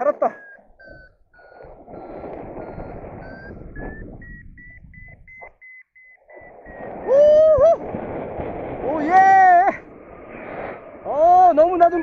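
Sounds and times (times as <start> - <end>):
variometer beeping: 0.0 - 7.6
wind buffeting microphone: 0.8 - 5.4, 6.3 - 12.0.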